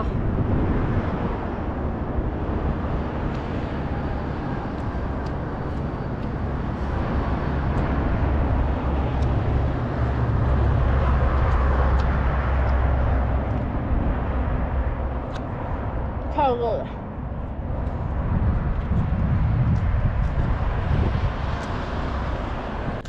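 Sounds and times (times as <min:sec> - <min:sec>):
strong wind buffeting microphone: 0:00.0 - 0:23.0.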